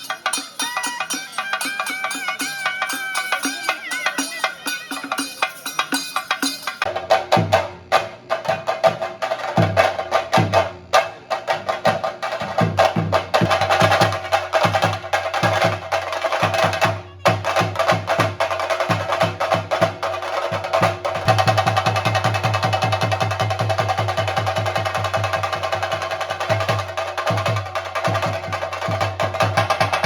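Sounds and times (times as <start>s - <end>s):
cymbals ringing: 0.0s - 6.9s
drums played with sticks: 0.0s - 30.0s.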